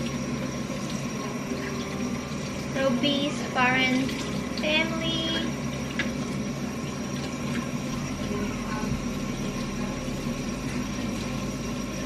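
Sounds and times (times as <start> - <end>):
tap water running into sink: 0.0 - 10.0
low steady hum: 0.0 - 12.0.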